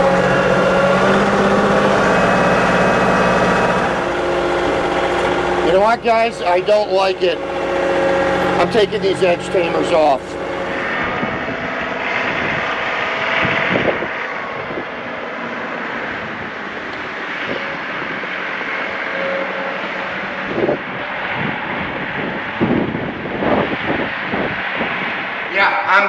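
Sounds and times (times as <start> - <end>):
tractor diesel engine running: 0.0 - 11.2
wind noise: 10.4 - 15.3, 20.5 - 25.5.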